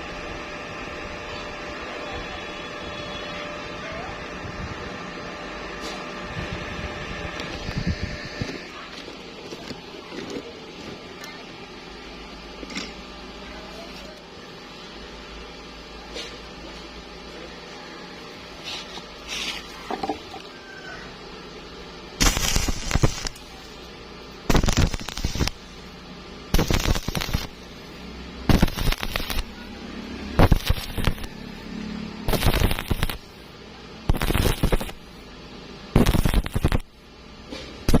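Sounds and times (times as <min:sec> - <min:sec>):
electric arc welding crackling: 0:22.1 - 0:35.2, 0:35.9 - 0:37.0, 0:37.8 - 0:38.0.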